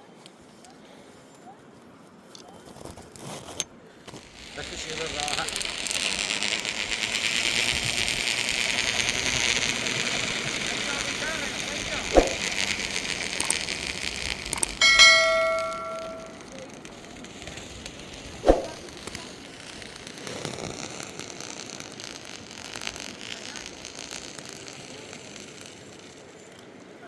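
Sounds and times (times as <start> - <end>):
short sharp sound: 12.1 - 12.4
metal object ringing: 14.8 - 16.5.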